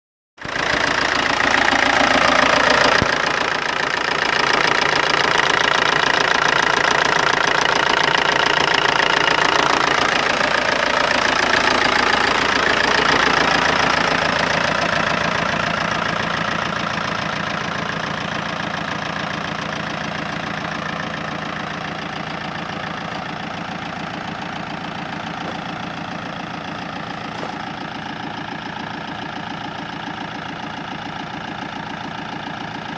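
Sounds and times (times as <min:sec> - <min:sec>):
diesel engine running: 0:00.4 - 0:32.9
engine ticking: 0:00.4 - 0:32.9.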